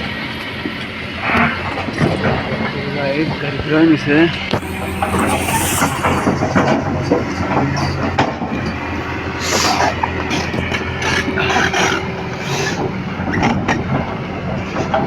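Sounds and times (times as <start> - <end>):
hissing: 4.5 - 7.3.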